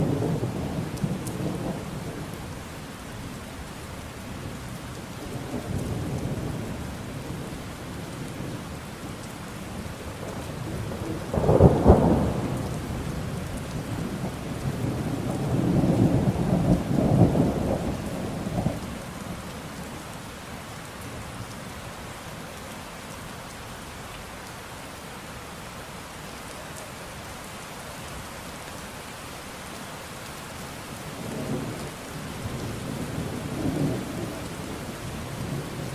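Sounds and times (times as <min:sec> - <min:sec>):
steady rain falling: 0:00.0 - 0:35.9
rolling rumble of thunder: 0:09.7 - 0:20.0, 0:31.2 - 0:35.9.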